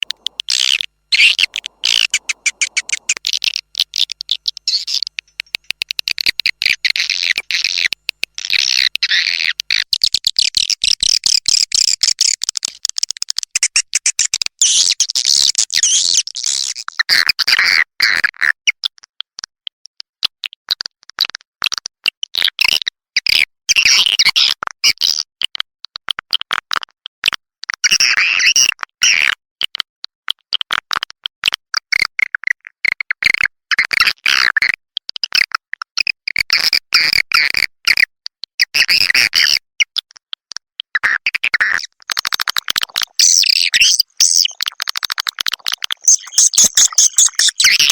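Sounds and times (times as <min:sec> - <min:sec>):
swiftlet chattering calls: 0:00.0 - 0:09.5, 0:42.1 - 0:47.9.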